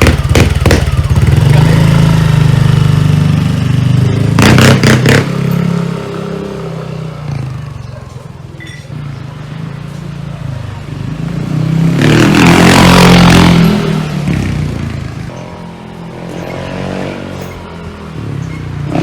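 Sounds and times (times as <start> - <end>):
scooter engine revving: 0.0 - 7.6, 10.9 - 17.4.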